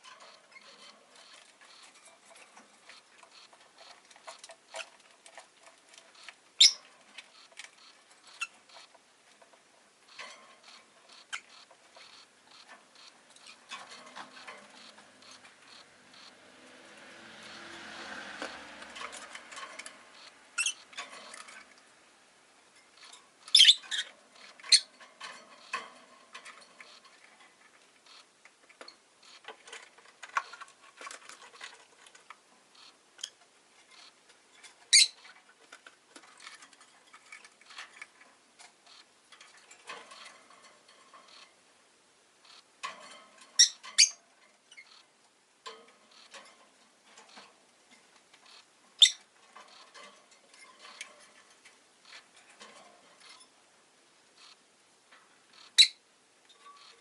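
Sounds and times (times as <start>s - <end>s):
faint clicks and ticks: 0.0s - 41.7s, 42.4s - 55.8s
lovebird chirping: 6.2s - 8.8s, 10.6s - 13.6s, 20.2s - 20.9s, 23.4s - 25.0s, 34.9s - 35.2s, 43.6s - 45.0s, 48.5s - 49.3s, 55.5s - 56.0s.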